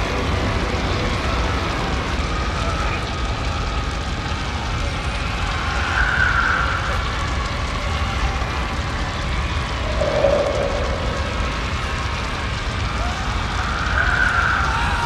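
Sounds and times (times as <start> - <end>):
deep rumbling drone: 0.0 - 15.0
high drawn-out wail: 4.7 - 15.0.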